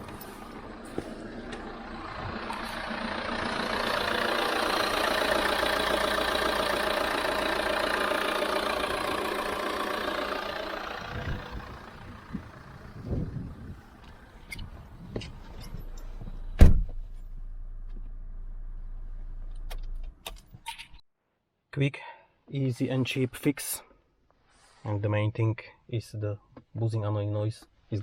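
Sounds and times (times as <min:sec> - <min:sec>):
diesel engine humming: 0:00.0 - 0:20.2.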